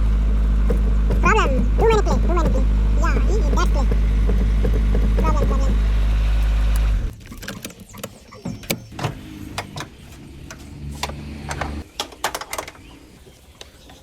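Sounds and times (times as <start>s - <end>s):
steady low hum: 0.0s - 7.1s
metal tools clicking and knocking: 11.8s - 12.9s.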